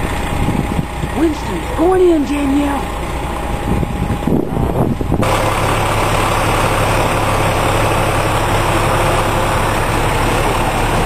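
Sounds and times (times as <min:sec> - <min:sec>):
fire engine idling: 0:00.0 - 0:11.0.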